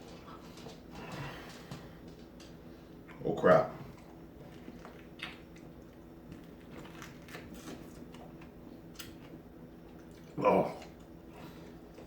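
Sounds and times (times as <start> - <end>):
steady low hum: 0.0 - 12.0
chewing wet fruit: 3.1 - 12.0.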